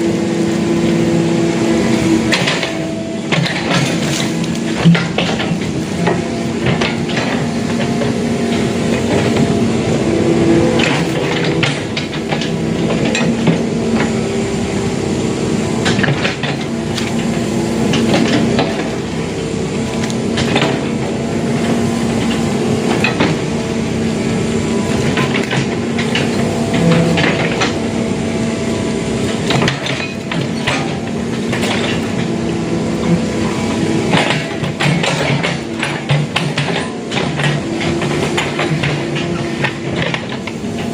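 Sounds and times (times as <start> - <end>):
excavator diesel engine running: 0.0 - 40.9
sharp metallic clanks: 25.1 - 27.9.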